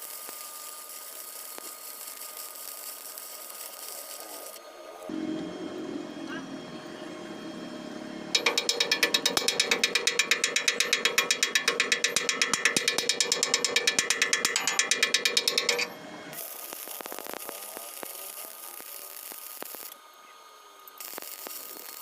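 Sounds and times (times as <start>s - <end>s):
rapid mechanical clatter: 8.4s - 19.2s.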